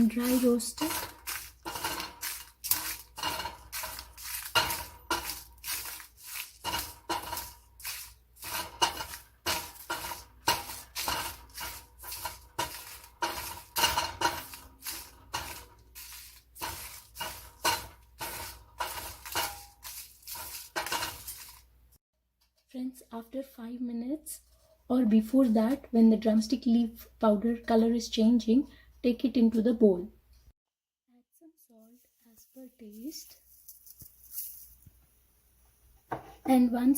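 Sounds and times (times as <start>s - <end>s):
utensil scraping a pan: 0.0s - 21.7s.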